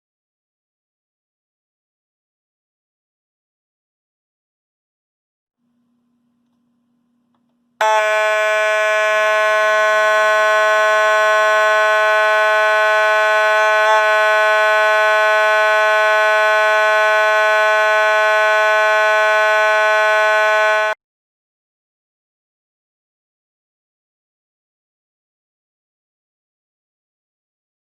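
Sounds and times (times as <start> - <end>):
fire alarm horn buzzing: 7.8 - 21.0.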